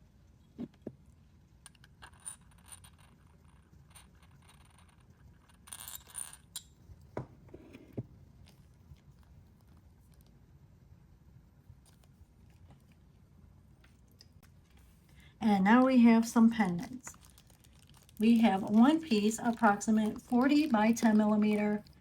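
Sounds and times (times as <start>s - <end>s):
packaging rustle: 17.0s - 22.0s.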